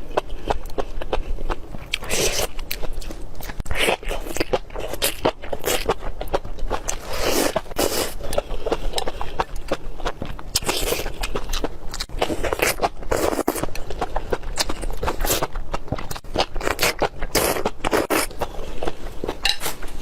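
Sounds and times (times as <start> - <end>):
person biting and chewing food: 0.0 - 20.0.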